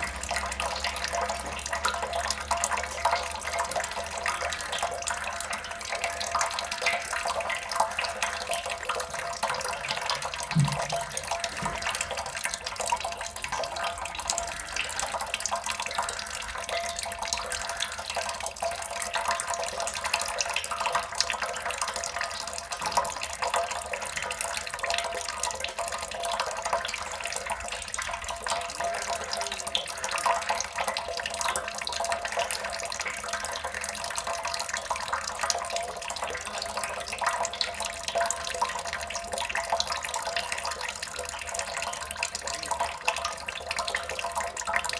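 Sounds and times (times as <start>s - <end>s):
water drops splashing: 0.0s - 33.8s.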